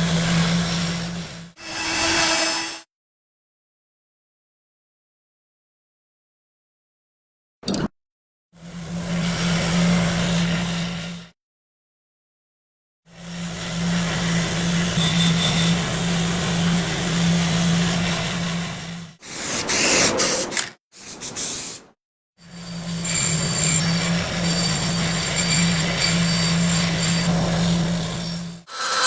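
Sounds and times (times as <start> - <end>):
electric power tool grinding: 22.6 - 29.0.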